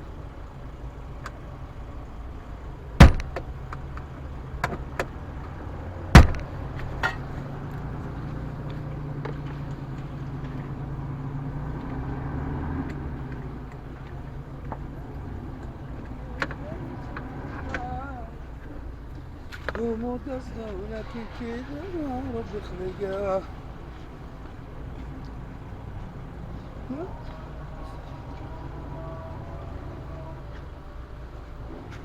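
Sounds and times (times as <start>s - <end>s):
vehicle low rumble: 0.0s - 32.0s
loud sharp knocks: 3.0s - 3.5s, 6.1s - 7.2s.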